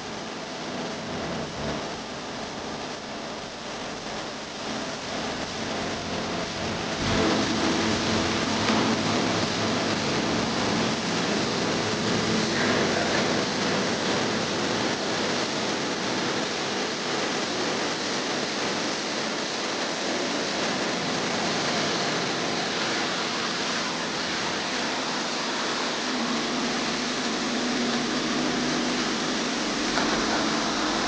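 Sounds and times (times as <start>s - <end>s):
pressure washer spraying car: 6.9s - 14.8s, 18.0s - 31.0s.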